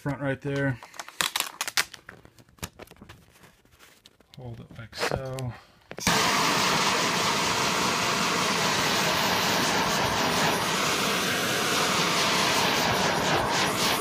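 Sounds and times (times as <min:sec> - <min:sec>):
heat gun blowing air: 0:06.0 - 0:14.0.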